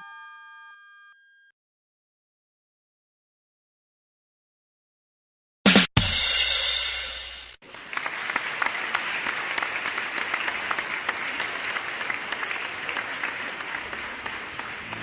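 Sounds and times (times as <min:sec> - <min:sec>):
crowd applause: 0:07.6 - 0:15.0.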